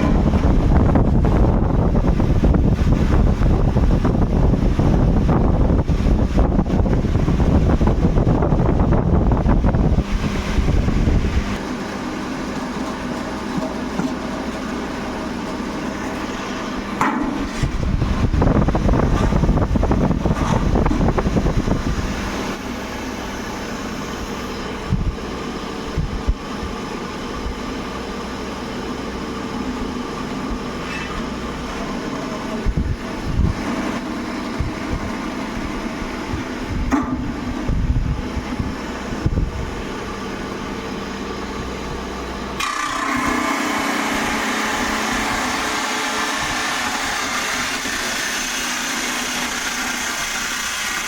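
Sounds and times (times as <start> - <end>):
heavy low rumble: 0.0 - 12.0, 15.7 - 26.8, 31.5 - 40.6
steady mechanical hum: 0.0 - 51.0.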